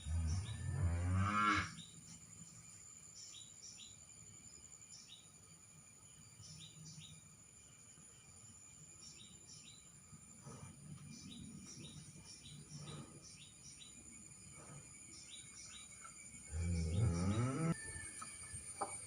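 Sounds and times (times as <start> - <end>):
cow mooing: 0.0 - 1.8, 16.5 - 17.8
small birds chirping: 1.8 - 17.9.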